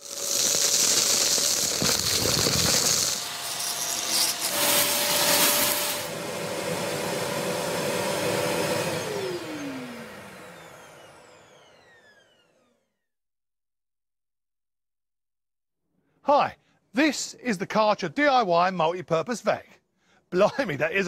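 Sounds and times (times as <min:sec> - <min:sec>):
vacuum suction hissing: 0:00.0 - 0:03.4
vacuum cleaner motor whine: 0:00.0 - 0:13.1.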